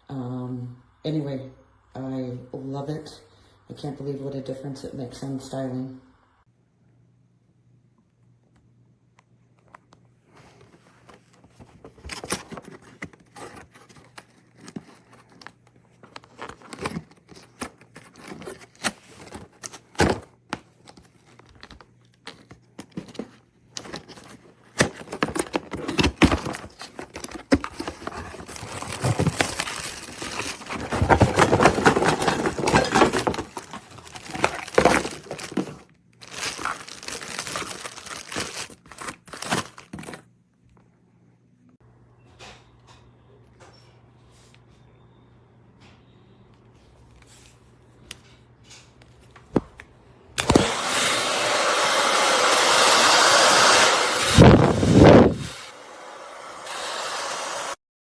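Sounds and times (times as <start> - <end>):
crinkling and rustling: 9.5 - 40.9.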